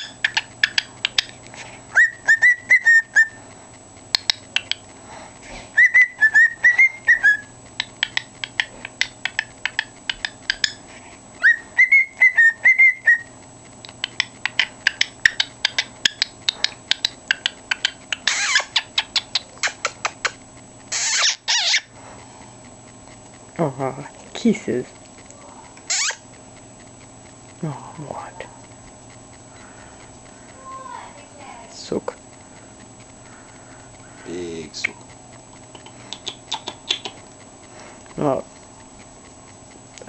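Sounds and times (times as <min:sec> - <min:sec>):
cockatiel sharp clicks: 0:00.0 - 0:01.4, 0:04.1 - 0:04.9, 0:06.2 - 0:10.8, 0:13.8 - 0:21.9, 0:34.8 - 0:37.3
cockatiel whistling: 0:02.0 - 0:03.4, 0:05.8 - 0:07.5, 0:11.4 - 0:13.3
cockatiel hissing: 0:17.7 - 0:22.3, 0:25.4 - 0:26.2, 0:35.8 - 0:38.0.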